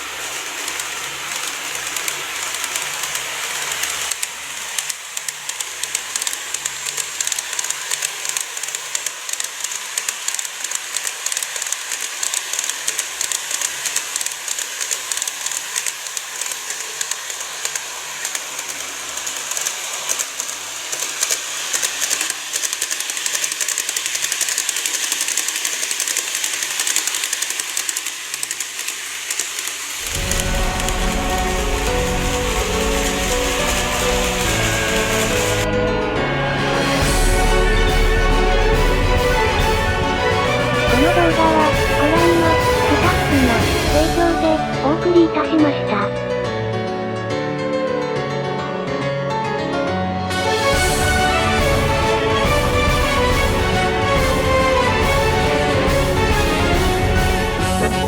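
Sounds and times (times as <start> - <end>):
small motor whirring: 0.0 - 35.6
model train wheels clicking: 0.0 - 35.7, 37.0 - 44.7.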